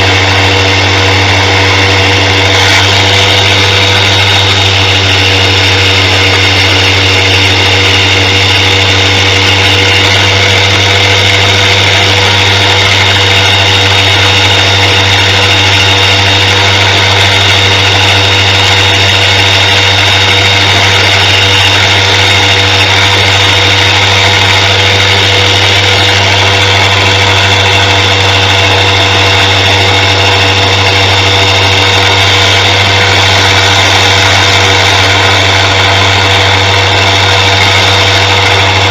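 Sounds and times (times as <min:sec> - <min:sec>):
bench grinder whirring: 0:00.0 - 0:38.9
knife against grinding wheel: 0:00.0 - 0:38.9.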